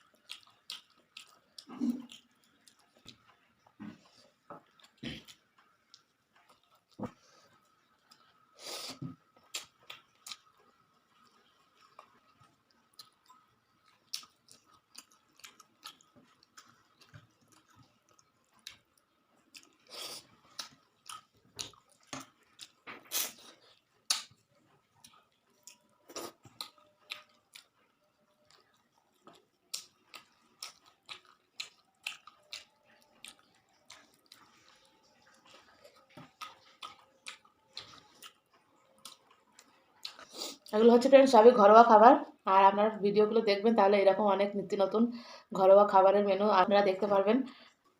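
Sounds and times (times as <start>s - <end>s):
person chewing food: 0.0s - 40.8s, 47.6s - 47.9s
wet mouth clicks and smacks: 24.1s - 24.4s.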